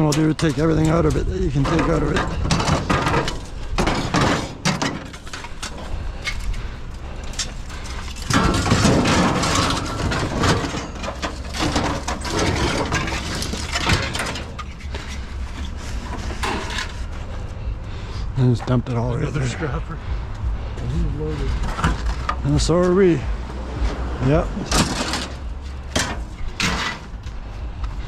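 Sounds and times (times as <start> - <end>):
metal parts clanking and rattling: 0.0 - 17.4, 21.5 - 22.7, 24.6 - 27.4.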